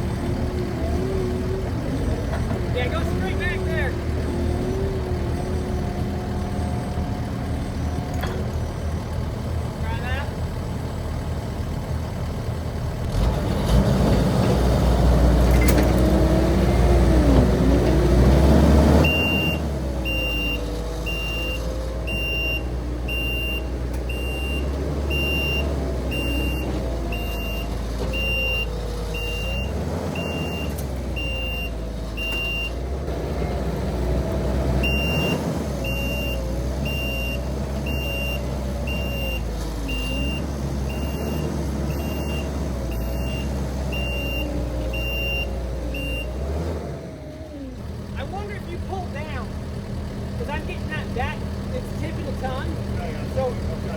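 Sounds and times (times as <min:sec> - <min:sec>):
heavy machine engines working: 0:00.0 - 0:53.9
backup alarm beeping: 0:19.0 - 0:32.8, 0:34.8 - 0:46.4.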